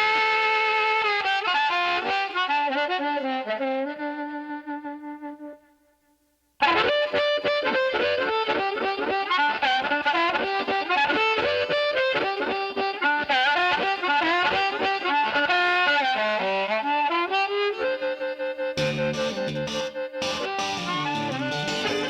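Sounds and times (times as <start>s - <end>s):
fast instrumental melody: 18.0s - 22.0s.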